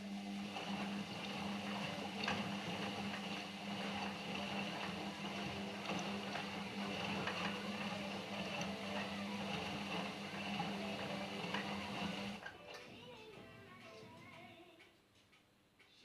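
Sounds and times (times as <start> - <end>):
washing machine motor hum: 0.0 - 12.5
water sloshing in drum: 0.6 - 12.3.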